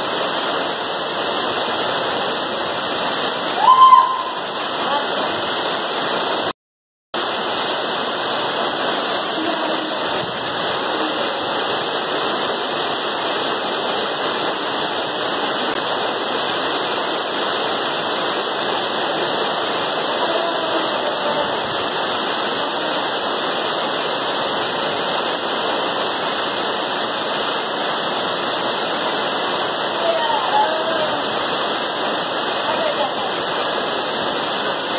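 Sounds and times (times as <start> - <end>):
waterfall rushing: 0.0 - 6.5, 7.2 - 34.9.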